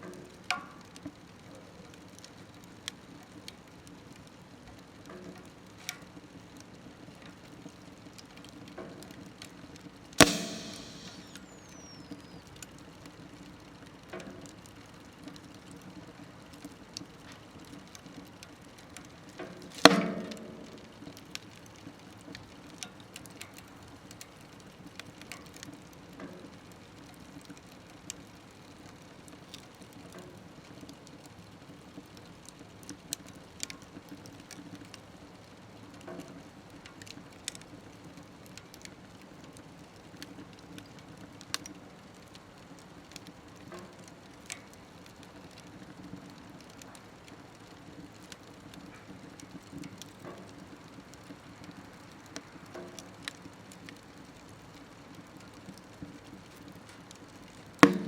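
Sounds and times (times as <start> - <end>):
wood fire crackling: 0.0 - 58.0
loud pops from fire: 10.2 - 12.7, 19.0 - 23.5, 54.7 - 58.0.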